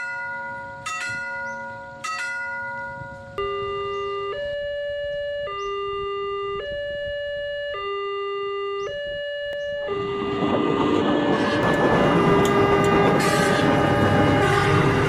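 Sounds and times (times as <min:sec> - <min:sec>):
passing train noise: 0:00.0 - 0:03.4, 0:09.5 - 0:15.0
two-tone hi-lo siren: 0:00.0 - 0:15.0.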